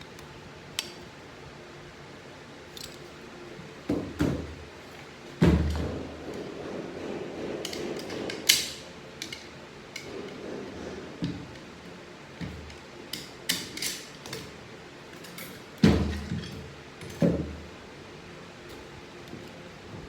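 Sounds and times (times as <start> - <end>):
metal parts knocking and clicking: 12.4 - 14.5.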